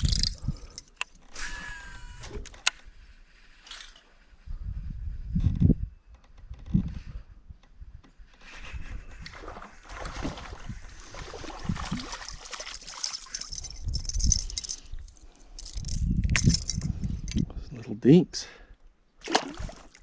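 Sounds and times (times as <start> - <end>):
gear rattling: 0.0 - 1.4, 11.8 - 17.5
water sloshing and gurgling: 8.7 - 14.8, 19.2 - 20.0.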